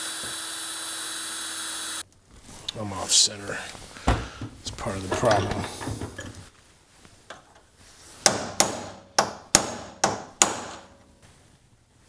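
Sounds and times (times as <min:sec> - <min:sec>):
hammer striking metal chisel: 0:08.2 - 0:11.1.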